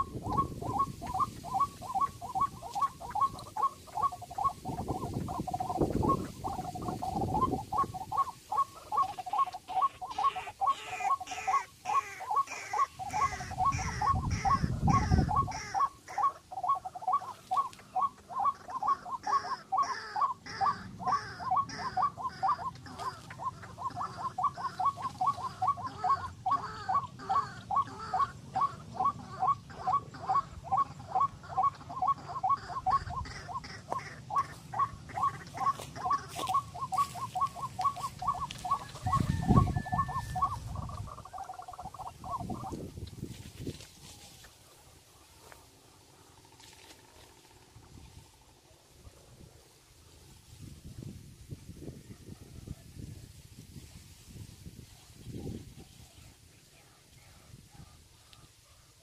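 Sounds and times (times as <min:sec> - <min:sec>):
bird calling sharp notes: 0:00.0 - 0:42.9.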